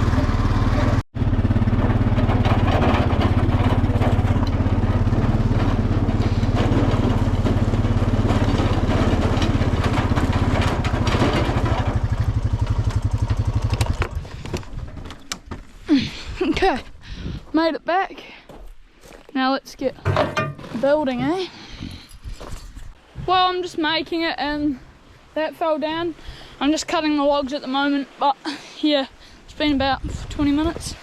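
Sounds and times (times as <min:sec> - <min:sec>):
quad bike engine running: 0:00.0 - 0:15.4.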